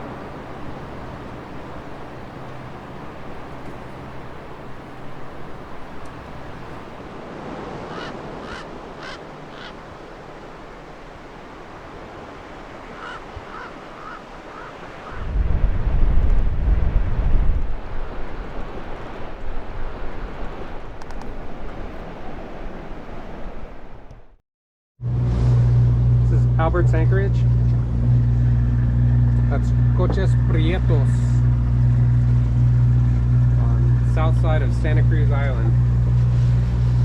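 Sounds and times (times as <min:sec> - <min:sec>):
wind buffeting microphone: 0:00.0 - 0:24.3
water: 0:00.0 - 0:24.4, 0:25.2 - 0:37.0.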